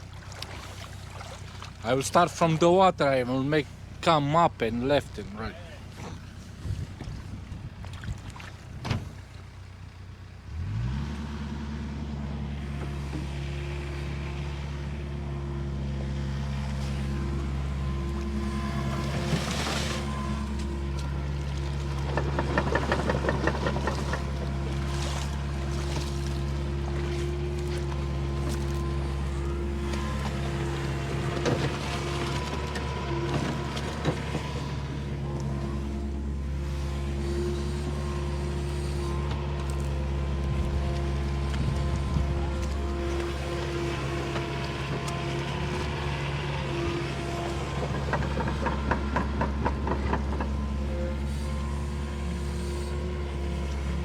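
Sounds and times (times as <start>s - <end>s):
excavator diesel engine running: 1.0s - 7.8s, 8.6s - 54.0s.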